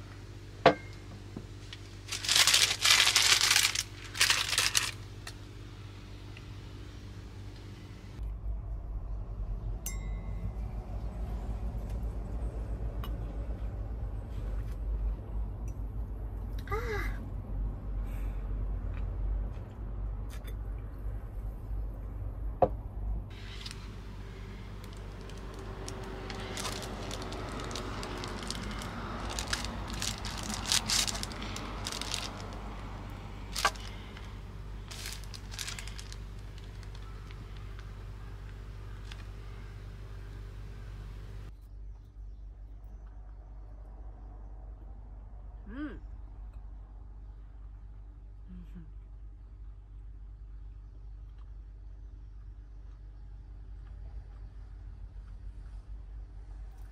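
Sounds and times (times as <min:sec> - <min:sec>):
steady low hum: 0:00.0 - 0:56.9
small objects rustling and clicking: 0:01.6 - 0:05.4, 0:23.3 - 0:39.4
low rumble: 0:07.4 - 0:16.6.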